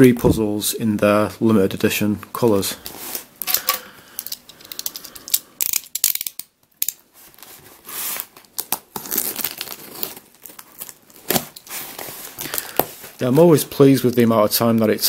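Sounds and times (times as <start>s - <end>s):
package being opened by hand: 3.2s - 13.1s.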